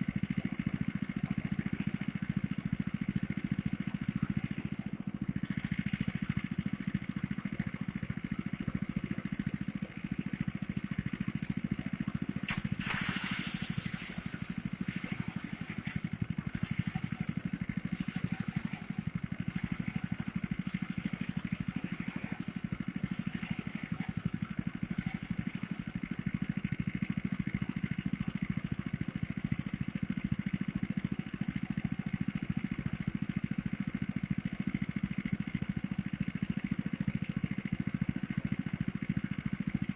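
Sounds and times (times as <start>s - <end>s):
small engine running: 0.0s - 39.9s
brief rushing hiss: 12.5s - 14.4s.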